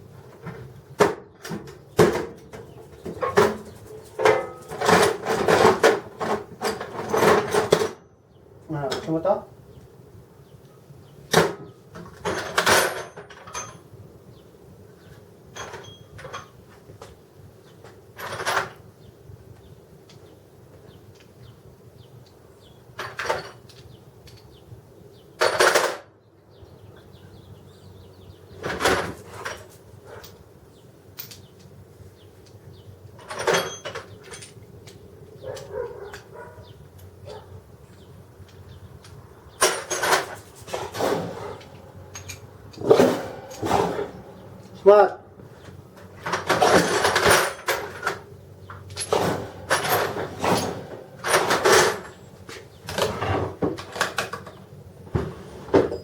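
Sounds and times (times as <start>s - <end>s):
sharp knocks and clatters: 0.3s - 8.0s, 11.3s - 13.9s, 23.0s - 24.5s, 25.4s - 26.1s, 37.9s - 56.0s.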